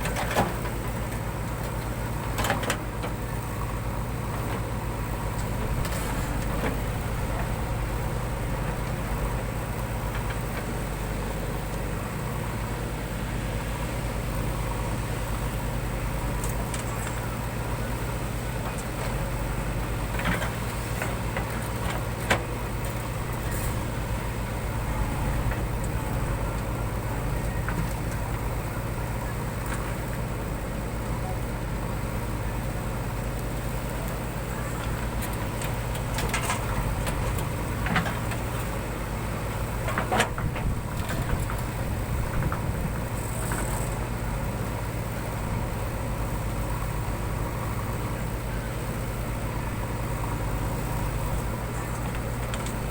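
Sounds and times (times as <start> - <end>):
diesel engine droning: 0.0 - 52.9.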